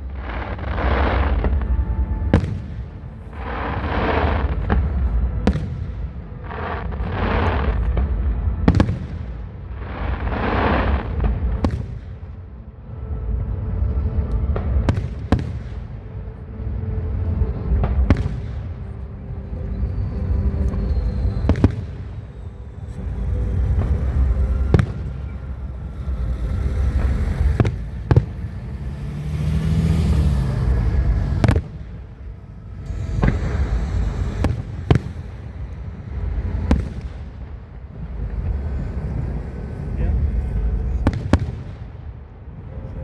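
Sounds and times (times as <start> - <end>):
low fireworks rumble: 0.0 - 43.0
firework shell bursts: 32.8 - 37.6.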